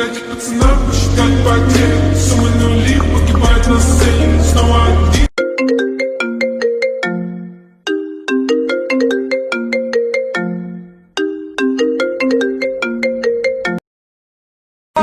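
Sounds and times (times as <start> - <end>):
phone ringtone melody: 5.3 - 13.8.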